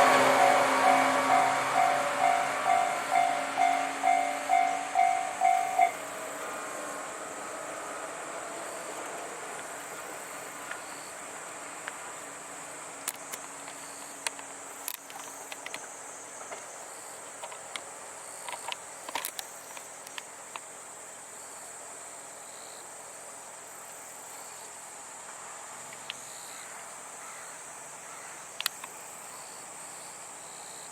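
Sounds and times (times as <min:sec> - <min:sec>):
passing train noise: 0:00.0 - 0:22.3
insects chirring: 0:00.0 - 0:30.9
faint clicks: 0:28.6 - 0:29.0.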